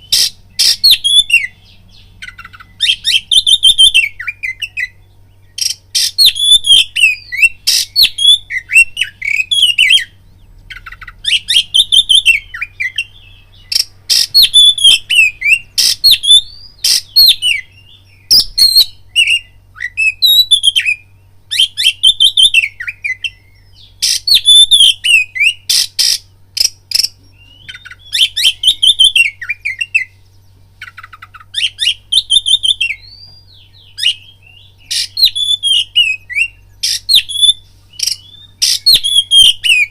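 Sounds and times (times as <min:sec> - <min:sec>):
bird singing whistled phrases: 0:00.0 - 0:39.9.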